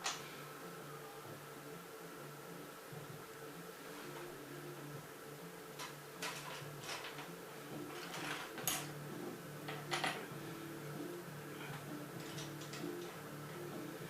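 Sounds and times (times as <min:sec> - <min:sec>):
steady low hum: 0:00.0 - 0:14.0
plastic pieces clicking and rattling: 0:05.8 - 0:07.3, 0:07.9 - 0:08.9.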